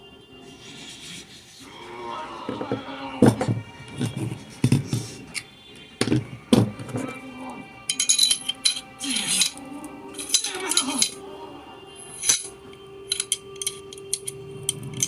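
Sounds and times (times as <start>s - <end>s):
steady background tone: 0.0s - 15.0s
metal pistol parts clinking: 7.9s - 9.6s, 10.2s - 11.2s, 12.2s - 15.0s.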